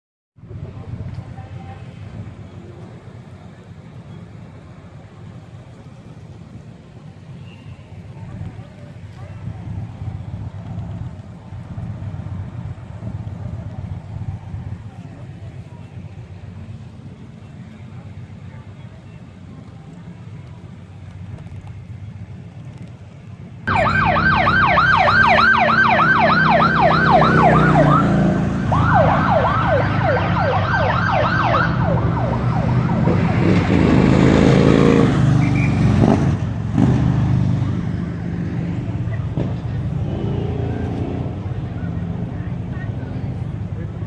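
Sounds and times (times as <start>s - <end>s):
vehicle engines passing: 0.4s - 44.0s
siren yelping: 23.7s - 33.5s.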